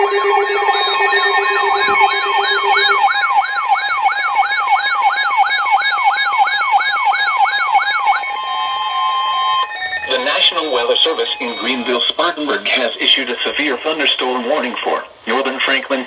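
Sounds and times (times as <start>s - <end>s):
steady alert tones: 0.0s - 5.7s, 8.2s - 12.3s
electronic siren yelping: 0.0s - 12.4s.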